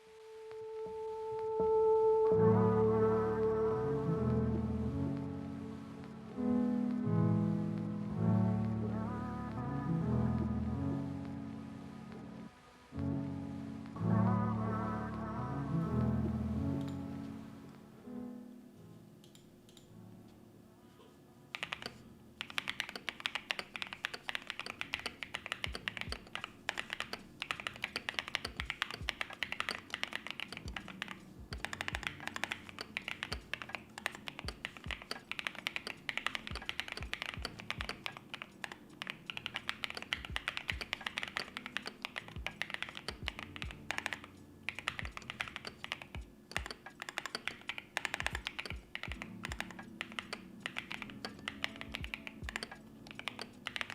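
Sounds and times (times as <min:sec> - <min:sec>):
mechanical keyboard typing: 0:21.5 - 0:53.9.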